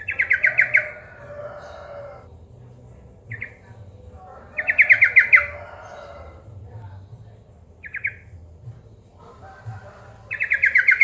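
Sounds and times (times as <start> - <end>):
bulbul chattering calls: 0.0 - 2.3, 3.3 - 6.5, 7.8 - 8.3, 9.6 - 11.0.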